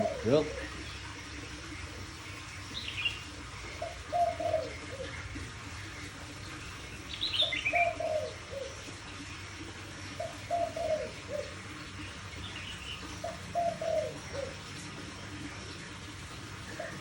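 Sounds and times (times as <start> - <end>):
dove cooing: 0.0 - 17.0.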